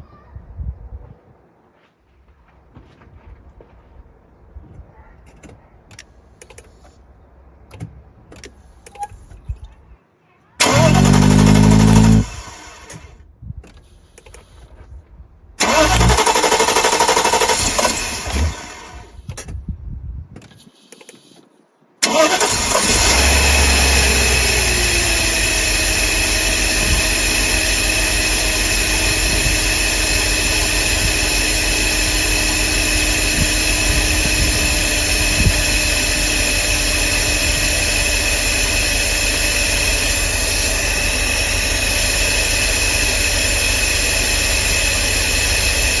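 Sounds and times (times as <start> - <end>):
engine starting and idling: 10.6 - 13.2, 15.6 - 19.2, 22.0 - 46.0.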